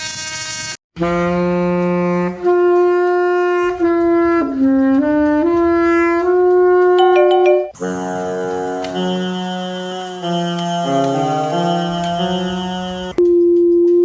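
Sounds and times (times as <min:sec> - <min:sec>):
solo wind instrument melody: 0:07.0 - 0:13.4.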